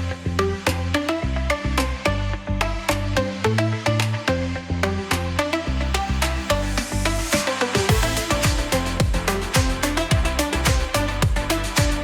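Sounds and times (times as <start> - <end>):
electronic dance-pop music: 0.0 - 12.0.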